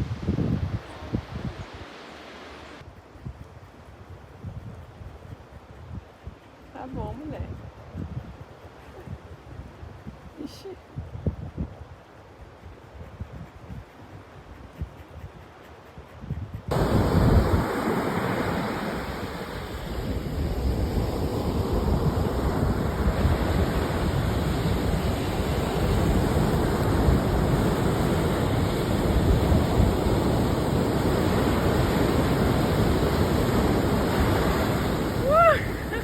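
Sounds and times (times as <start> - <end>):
wind buffeting microphone: 0.0 - 2.0, 2.6 - 36.0
ocean surf washing on shore: 0.0 - 2.8, 16.7 - 36.0.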